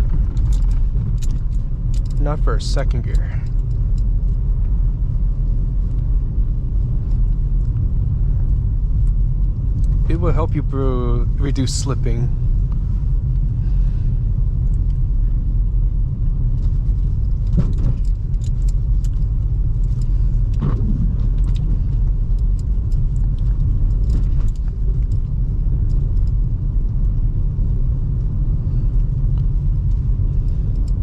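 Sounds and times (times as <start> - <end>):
car engine low rumble: 0.0 - 31.0.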